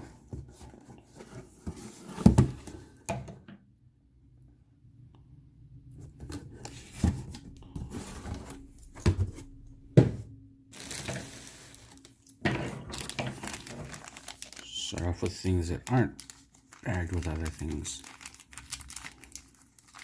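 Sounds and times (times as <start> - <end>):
plastic and paper rustling: 6.2 - 9.4, 10.7 - 20.0
knocks and thuds: 9.0 - 10.3.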